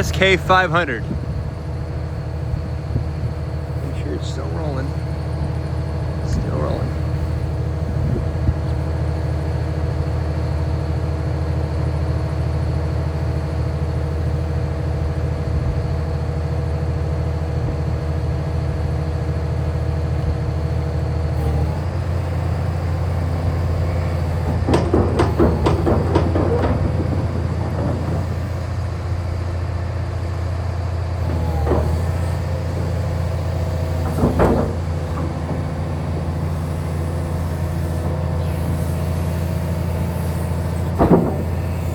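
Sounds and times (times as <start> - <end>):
excavator diesel engine running: 0.0 - 41.9
rapid clanking and rattling: 22.2 - 29.7, 31.2 - 41.9.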